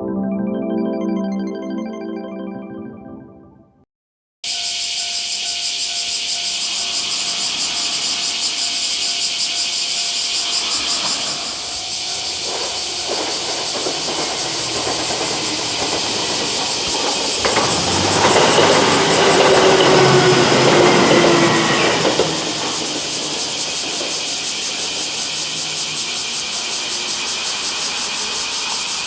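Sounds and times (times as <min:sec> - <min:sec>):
level crossing alarm ringing: 0:04.4 - 0:27.3
diesel train rumbling: 0:05.3 - 0:29.0.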